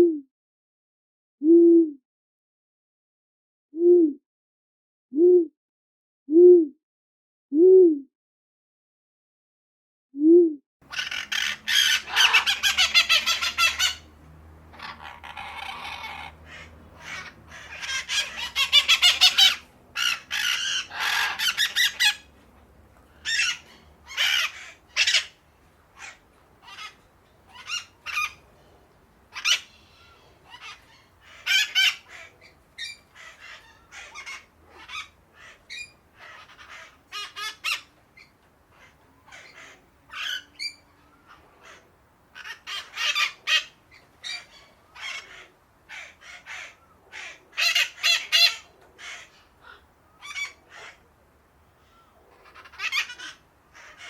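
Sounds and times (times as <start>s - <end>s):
short low tone: 3.8s - 4.2s, 5.2s - 5.5s, 6.3s - 6.7s, 7.6s - 8.1s, 10.2s - 10.6s
parakeets chattering and squawking: 10.9s - 51.2s, 51.8s - 54.0s.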